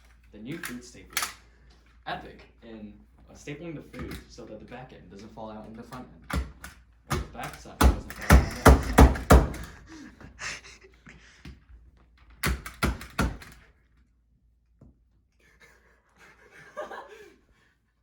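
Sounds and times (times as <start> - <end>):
stapler thunks: 6.3 - 9.8, 12.4 - 13.6.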